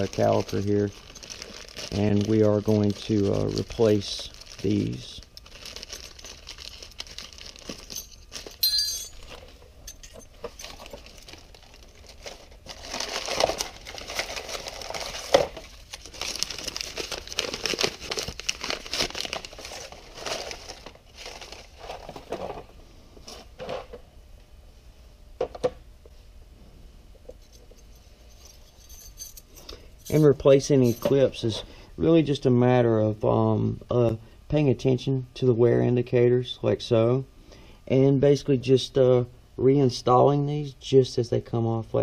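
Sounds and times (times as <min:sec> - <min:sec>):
plastic packaging crinkling and tearing: 0:00.0 - 0:08.6, 0:10.5 - 0:22.5
metal clips clinking: 0:07.8 - 0:09.3.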